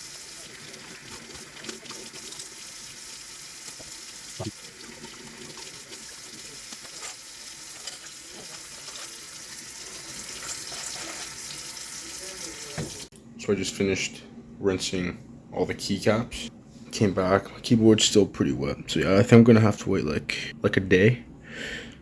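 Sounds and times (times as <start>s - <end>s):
tap water running into sink: 0.0s - 13.1s.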